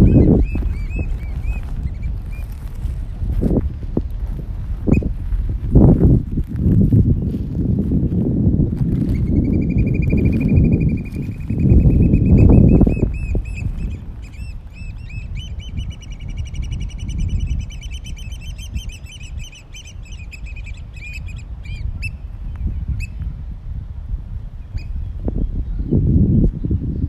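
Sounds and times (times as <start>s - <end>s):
oystercatchers piping: 0.0s - 3.5s, 8.9s - 23.2s
low rumbling noise: 0.0s - 16.7s.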